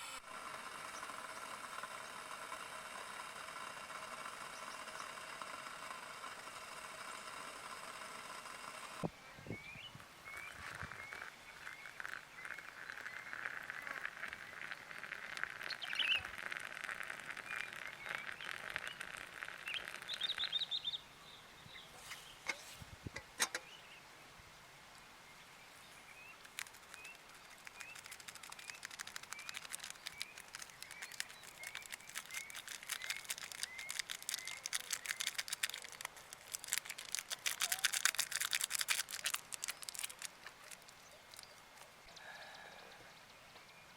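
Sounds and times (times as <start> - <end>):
rapid ticking: 10.8 - 20.6, 26.4 - 41.5.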